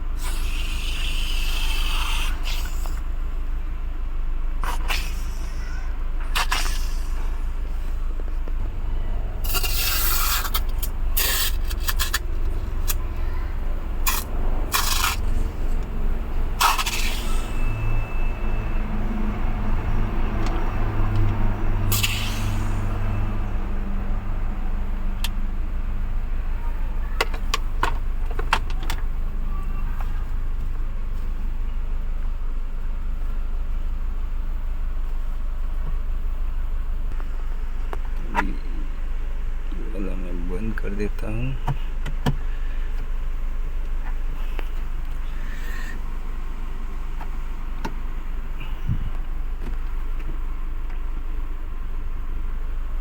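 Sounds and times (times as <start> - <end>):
car engine low hum: 0.0 - 53.0
hissing and scraping bursts: 0.2 - 3.0, 4.6 - 7.4, 9.4 - 12.3, 14.0 - 15.8, 16.6 - 18.0, 21.9 - 22.8.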